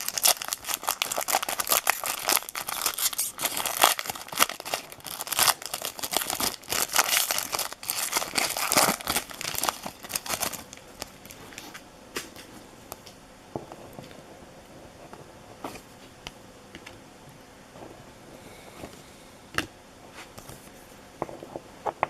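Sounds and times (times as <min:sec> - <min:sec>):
card pack wrappers crinkling: 0:00.0 - 0:11.8.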